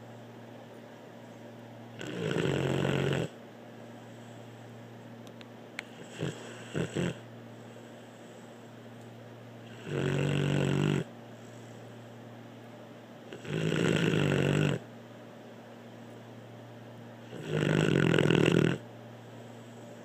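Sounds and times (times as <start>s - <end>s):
pitched snoring: 2.0s - 3.4s, 5.8s - 8.7s, 9.6s - 11.7s, 13.3s - 14.9s, 17.2s - 18.8s.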